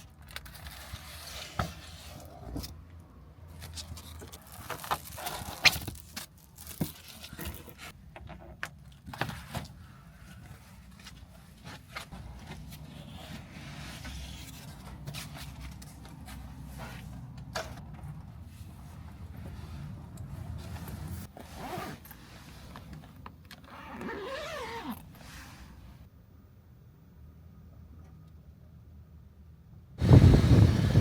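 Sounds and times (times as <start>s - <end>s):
zip-like scrape: 21.3s - 22.4s
heavy rain and wind rumble: 30.0s - 31.0s.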